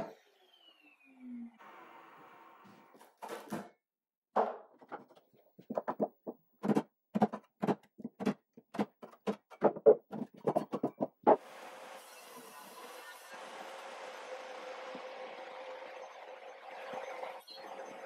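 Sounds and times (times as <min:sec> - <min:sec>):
hollow wooden knocks: 0:04.4 - 0:11.4.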